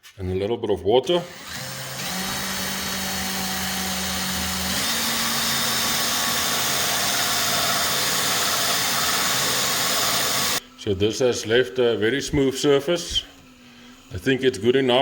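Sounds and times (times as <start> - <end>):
electric drill motor hum: 1.3 - 10.7.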